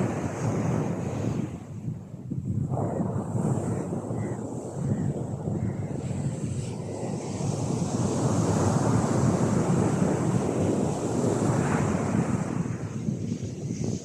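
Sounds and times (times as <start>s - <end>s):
sea waves breaking on beach: 2.9s - 14.0s.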